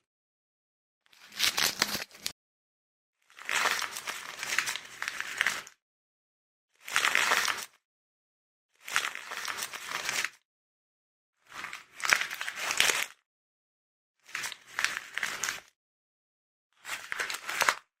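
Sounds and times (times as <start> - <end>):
packing paper crinkling: 1.1 - 2.3.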